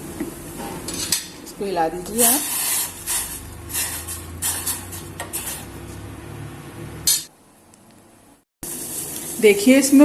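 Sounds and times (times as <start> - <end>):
spoon scraping pan: 2.1 - 5.9
water boiling: 8.6 - 10.0.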